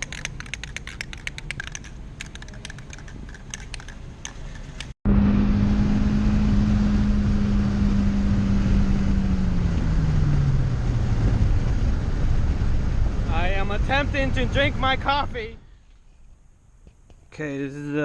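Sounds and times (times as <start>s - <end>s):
rapid light clicks: 0.0s - 5.0s
car engine and road noise: 0.0s - 17.3s.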